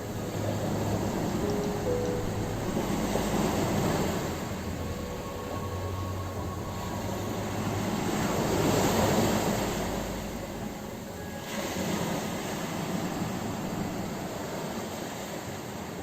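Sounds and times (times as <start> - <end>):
waves washing onto shore: 0.0 - 16.0.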